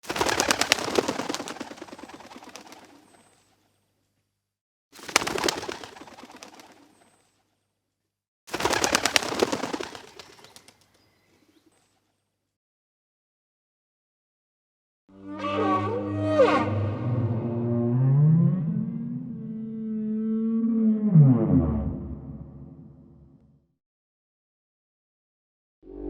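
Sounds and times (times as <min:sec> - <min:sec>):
bird wings flapping: 0:00.0 - 0:03.6, 0:05.0 - 0:07.4, 0:08.5 - 0:11.1.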